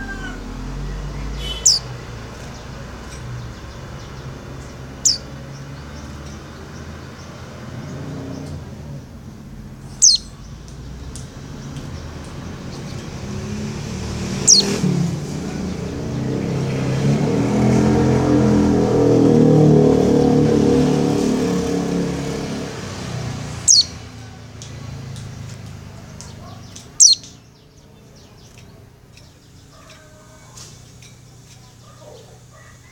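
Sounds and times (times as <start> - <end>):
high bird calls: 0.0 - 8.7, 9.8 - 13.6, 14.3 - 16.6, 22.9 - 24.4, 25.0 - 32.9
motor vehicle passing: 0.0 - 32.9.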